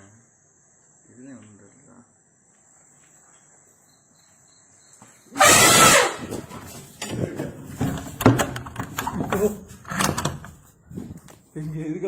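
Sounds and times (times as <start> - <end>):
crickets chirping: 0.0 - 12.0
elephant trumpeting: 5.3 - 6.5.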